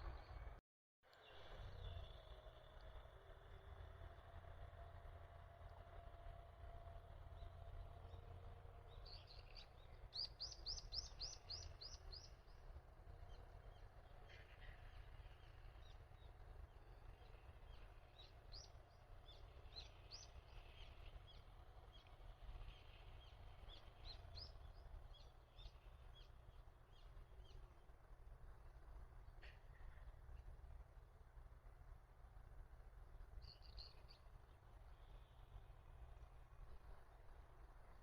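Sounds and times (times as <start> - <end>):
faint low rumble: 0.0 - 38.0
small birds chirping: 7.3 - 30.5, 33.3 - 38.0.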